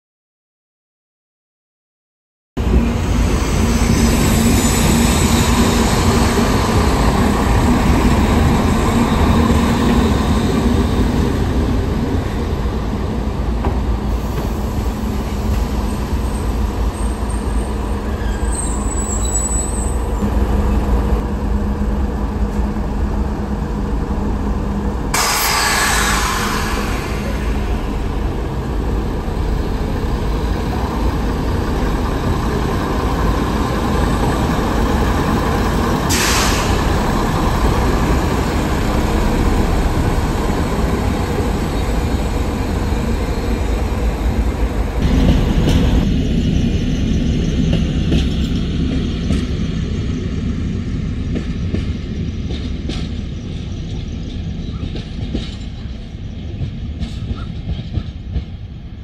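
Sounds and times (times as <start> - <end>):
diesel railcar running on track: 2.6 - 59.0.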